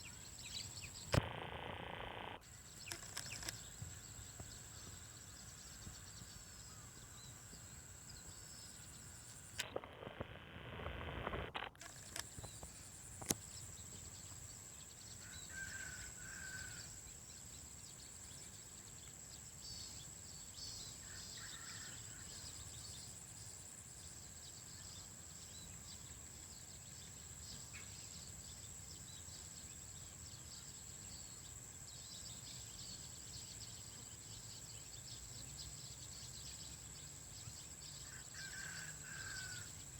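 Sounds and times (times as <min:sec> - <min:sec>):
small bird chirps: 0:02.1 - 0:09.8.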